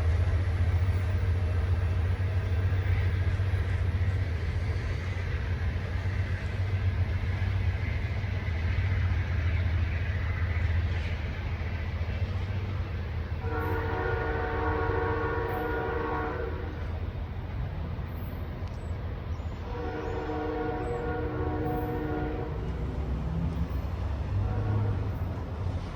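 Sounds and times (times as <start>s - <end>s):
passing train rumble: 0.0s - 25.9s
train horn chord blasts: 13.4s - 16.9s, 19.6s - 22.9s, 24.3s - 25.3s.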